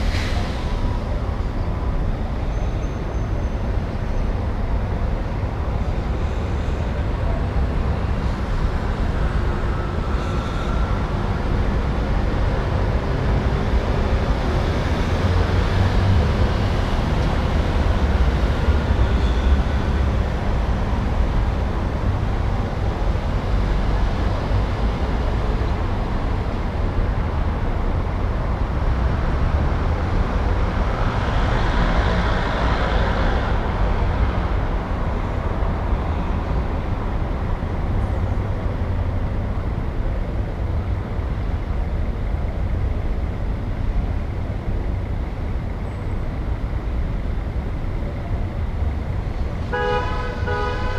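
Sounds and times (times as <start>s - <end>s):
rumble of passing traffic: 0.0s - 50.9s.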